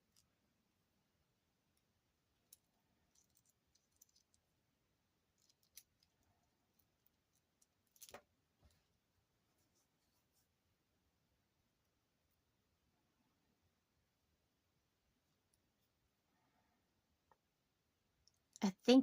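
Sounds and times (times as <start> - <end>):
beads clicking: 2.4 - 4.5, 5.3 - 8.3.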